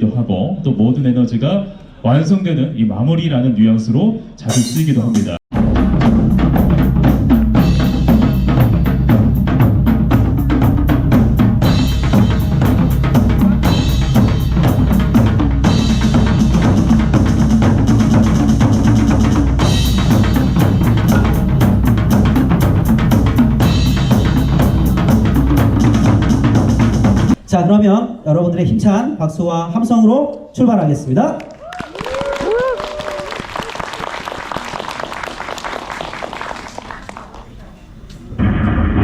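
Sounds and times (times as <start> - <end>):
drum kit beat: 4.5 - 27.5
cymbals: 4.5 - 27.6
amplified music: 5.6 - 27.5.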